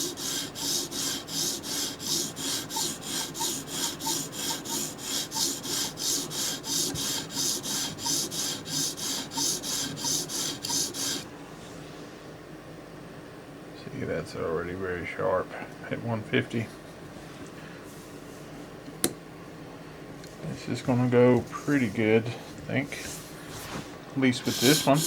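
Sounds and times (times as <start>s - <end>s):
knife rasping on sharpening stone: 0.0s - 11.3s, 24.5s - 25.0s.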